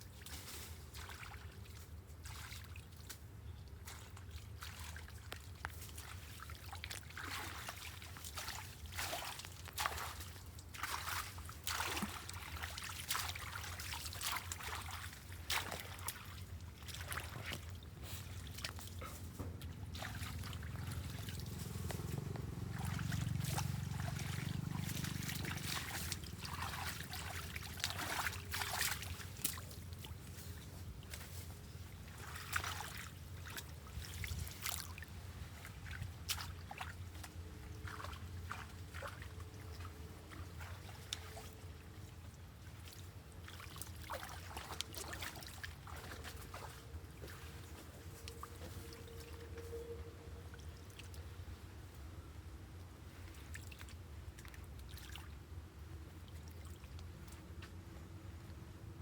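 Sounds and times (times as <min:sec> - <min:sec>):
floodwater trickling and splashing: 0:00.0 - 0:59.0
steady low hum: 0:11.2 - 0:59.0
low rumble: 0:18.2 - 0:28.0.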